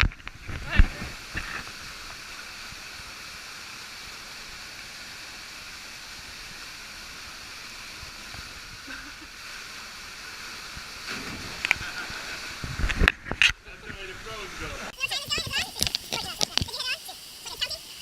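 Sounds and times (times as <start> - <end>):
waterfall rushing: 13.8 - 18.0.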